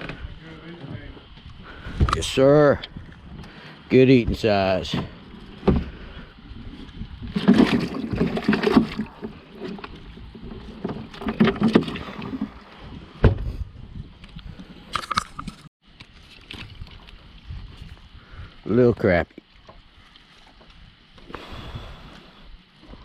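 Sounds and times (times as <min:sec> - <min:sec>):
handling noises on boat: 0:00.0 - 0:17.9.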